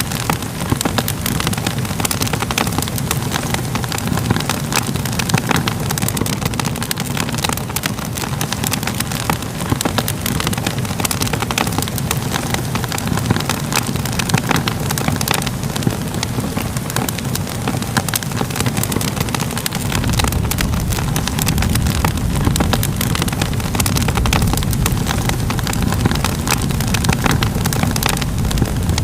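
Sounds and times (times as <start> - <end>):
fire crackling: 0.0 - 29.0
rush of flames: 0.0 - 29.0.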